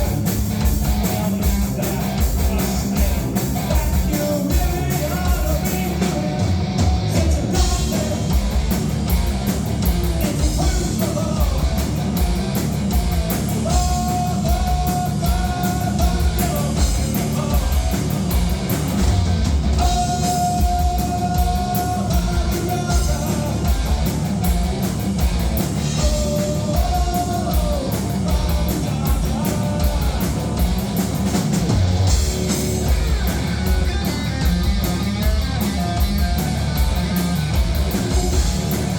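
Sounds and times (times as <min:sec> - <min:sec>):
drum kit: 0:00.0 - 0:38.9
guitars: 0:00.0 - 0:38.9
rock band playing live: 0:00.0 - 0:38.9
person singing: 0:13.6 - 0:18.1, 0:19.8 - 0:23.9, 0:26.0 - 0:30.7.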